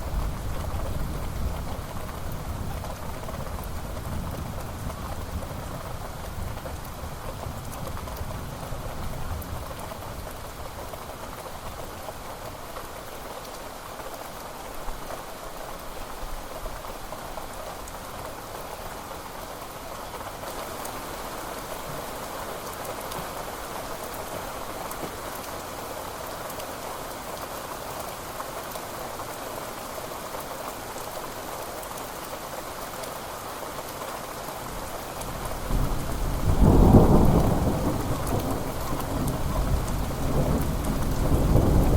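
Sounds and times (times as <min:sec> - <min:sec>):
heavy rain falling: 0:00.0 - 0:41.9
thunder rumbling: 0:35.4 - 0:41.9.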